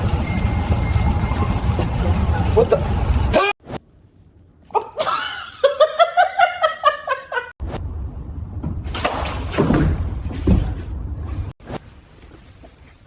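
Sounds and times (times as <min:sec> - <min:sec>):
person laughing hard: 0:04.8 - 0:07.5
low background rumble: 0:07.6 - 0:09.0.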